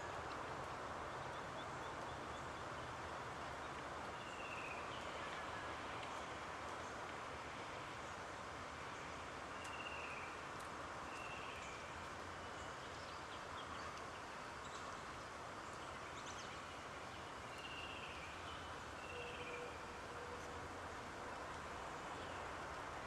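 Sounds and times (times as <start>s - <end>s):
steady outdoor hiss: 0.0s - 23.0s
light ticks: 0.1s - 0.8s, 3.6s - 3.9s, 5.3s - 7.3s, 9.6s - 16.5s, 21.4s - 21.7s.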